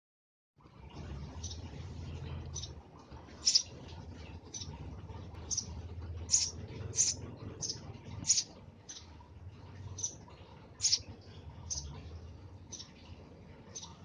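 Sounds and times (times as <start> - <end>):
low steady rumble: 0.6 - 14.0
sparrow chirping: 2.4 - 3.8, 5.4 - 9.1, 9.8 - 12.0, 12.7 - 13.0, 13.7 - 14.0.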